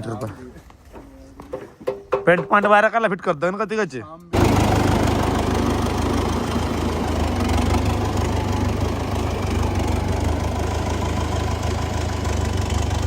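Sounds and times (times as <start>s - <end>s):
tractor engine running: 4.3s - 13.0s.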